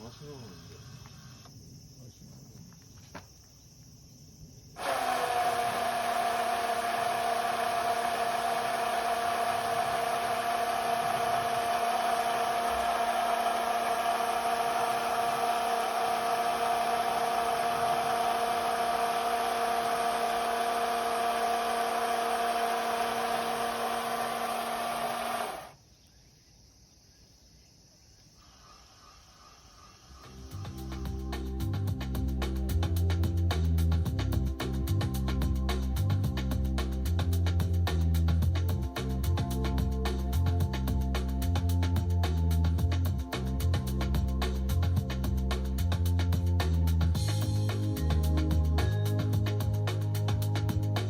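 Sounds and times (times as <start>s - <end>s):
electric motor whine: 4.8s - 25.8s.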